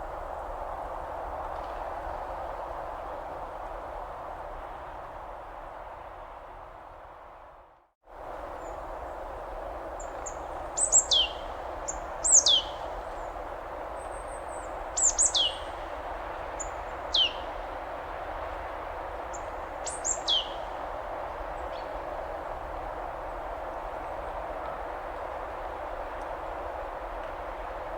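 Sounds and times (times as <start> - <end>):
bird whistling calls: 10.2 - 12.8, 15.0 - 15.7, 16.6 - 17.5, 19.8 - 20.6.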